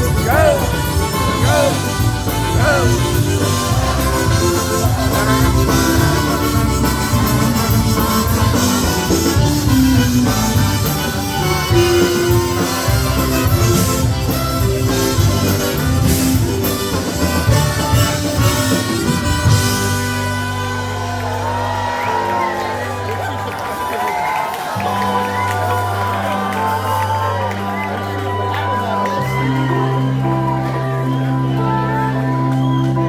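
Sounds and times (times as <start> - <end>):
polka band playing: 0.0 - 33.0.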